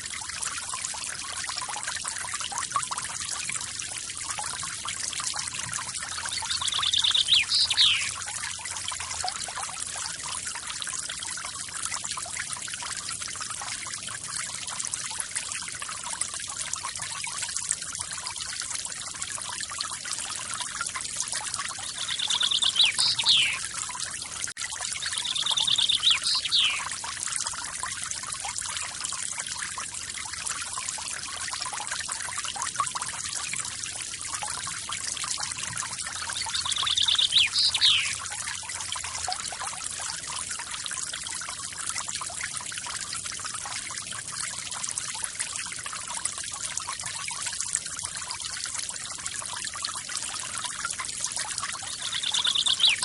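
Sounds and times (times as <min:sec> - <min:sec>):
waterfall splashing and trickling: 0:00.0 - 0:53.0
bird buzzy trill call: 0:06.5 - 0:08.2, 0:22.0 - 0:23.6, 0:25.2 - 0:26.8, 0:36.4 - 0:38.2.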